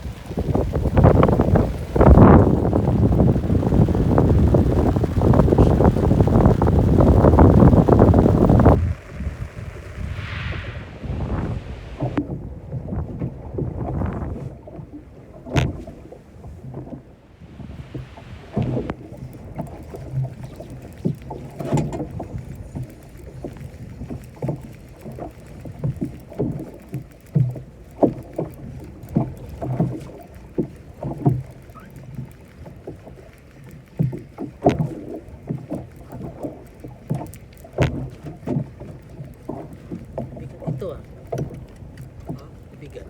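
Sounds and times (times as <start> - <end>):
low steady rumble: 0.0 - 14.1
waves slapping against boat hull: 0.0 - 43.0.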